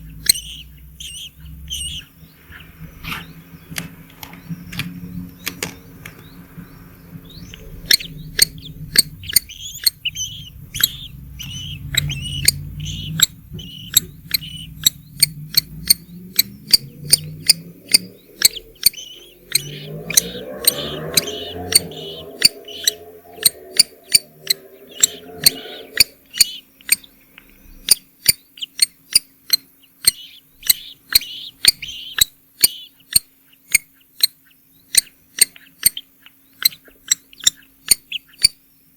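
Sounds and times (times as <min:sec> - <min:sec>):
low hum with overtones: 0:00.0 - 0:28.2
bird chicks chirping: 0:00.0 - 0:38.9
sharp clicks: 0:03.7 - 0:06.3, 0:07.5 - 0:38.6.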